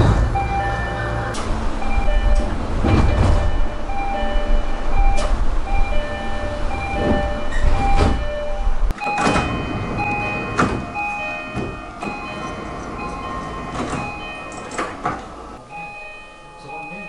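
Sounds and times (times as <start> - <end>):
sliding doors knocking and hissing: 0.0 - 15.6
low train rumble: 0.0 - 17.0
three-tone train door chime: 0.0 - 17.0
sharp clunk: 2.3 - 3.7.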